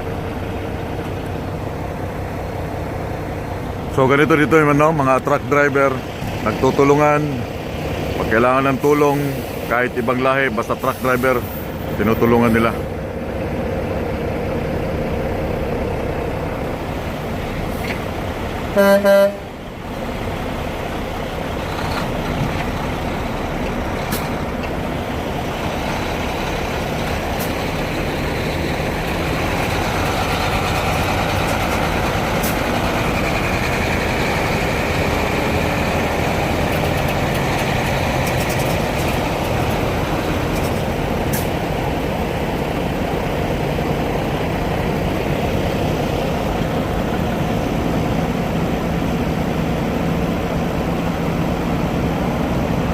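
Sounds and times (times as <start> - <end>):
diesel truck engines running: 0.0 - 52.9
truck horn blast: 18.7 - 19.6.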